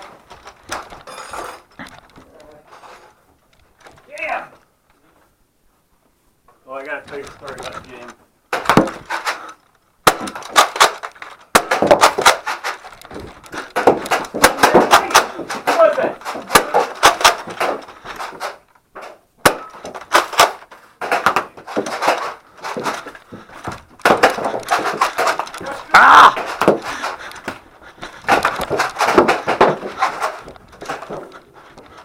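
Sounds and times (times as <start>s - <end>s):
person shouting: 25.6s - 26.5s.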